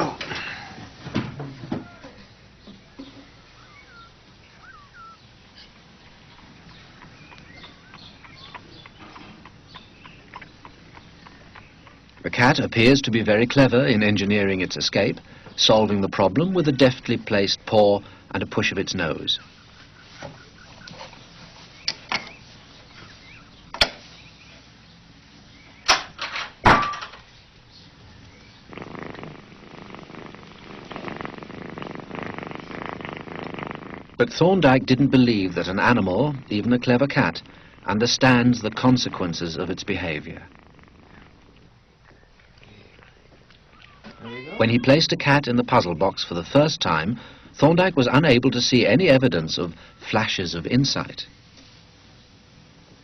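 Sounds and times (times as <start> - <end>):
cat purring: 3.2 - 20.6, 27.9 - 46.0.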